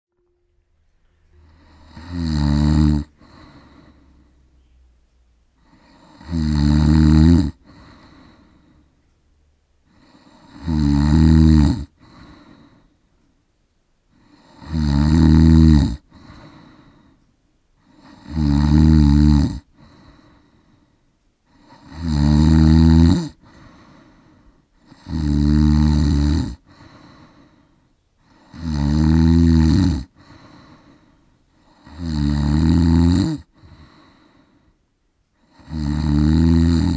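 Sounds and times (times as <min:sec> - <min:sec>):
faint breathing: 0:01.2 - 0:02.2, 0:03.0 - 0:06.9, 0:07.5 - 0:09.2, 0:09.8 - 0:10.7, 0:11.8 - 0:13.5, 0:16.0 - 0:18.3, 0:19.6 - 0:22.6, 0:23.2 - 0:25.4, 0:26.1 - 0:28.8, 0:29.9 - 0:32.0, 0:33.4 - 0:35.7
man snoring: 0:01.4 - 0:04.3, 0:05.6 - 0:08.9, 0:09.9 - 0:12.9, 0:14.1 - 0:17.2, 0:17.8 - 0:20.8, 0:21.5 - 0:27.6, 0:28.2 - 0:34.5, 0:35.4 - 0:36.9.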